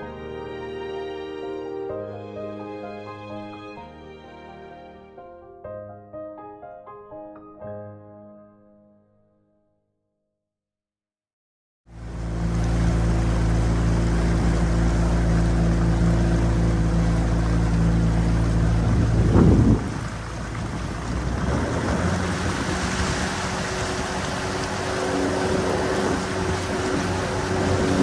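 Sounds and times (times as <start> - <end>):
outboard motor running: 11.9 - 28.0
water noise: 11.9 - 28.0
wind noise: 18.2 - 28.0.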